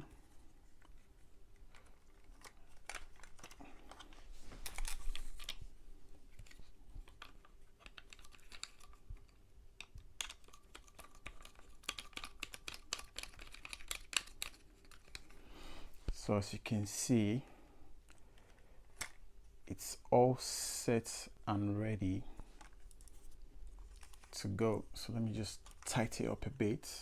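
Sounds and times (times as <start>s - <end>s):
tablet holder clicking and rattling: 1.6s - 5.6s, 6.4s - 15.4s.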